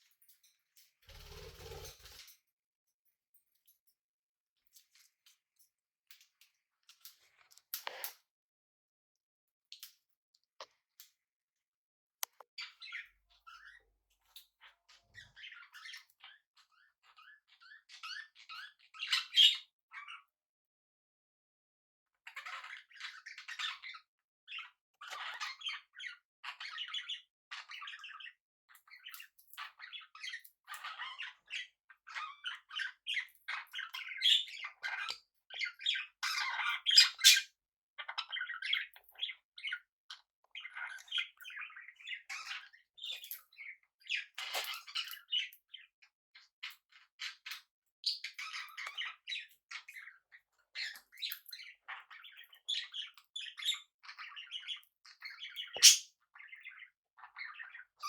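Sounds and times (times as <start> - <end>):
birds chirping and chattering: 1.1 - 2.3, 12.6 - 20.2, 22.3 - 45.9, 46.6 - 58.0
bird squawks: 36.8 - 37.5, 55.6 - 56.1.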